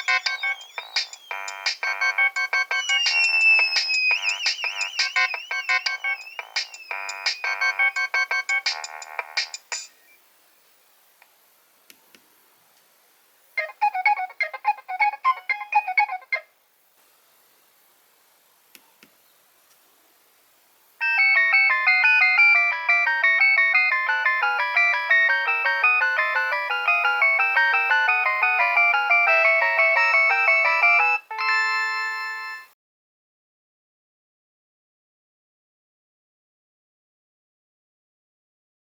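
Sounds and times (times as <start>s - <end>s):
phone ringtone melody: 0.0s - 9.6s, 13.6s - 16.4s, 21.0s - 32.7s.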